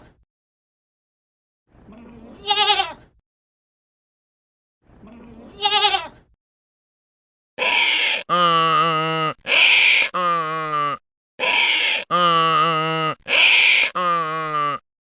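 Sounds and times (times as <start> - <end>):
sheep bleating: 1.9 - 3.0, 5.0 - 6.1, 7.6 - 14.8.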